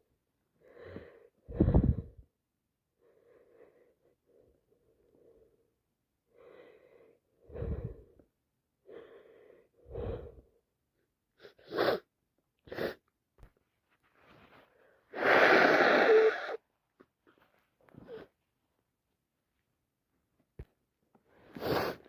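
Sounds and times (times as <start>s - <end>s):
wheezy catching breath: 6.3s - 10.6s, 21.3s - 22.0s.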